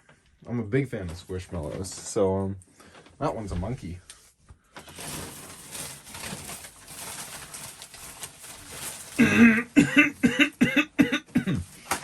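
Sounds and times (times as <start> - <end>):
faint rustling: 1.0 - 9.2
person coughing: 9.2 - 11.8.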